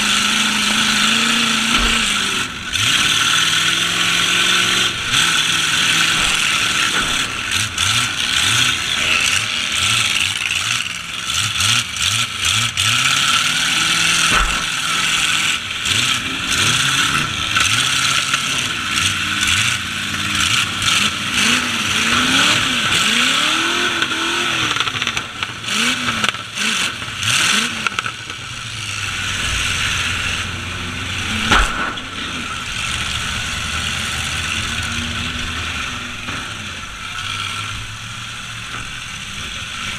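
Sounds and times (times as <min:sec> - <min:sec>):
truck engines revving hard: 0:00.0 - 0:39.9
loud bang: 0:01.4 - 0:10.2, 0:14.2 - 0:15.0, 0:29.4 - 0:33.8.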